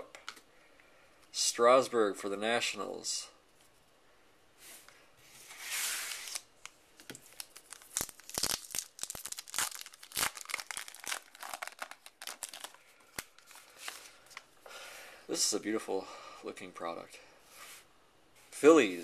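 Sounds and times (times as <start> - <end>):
wrapper ripping: 6.1 - 14.0
wrapper crackling and rustling: 7.2 - 14.4.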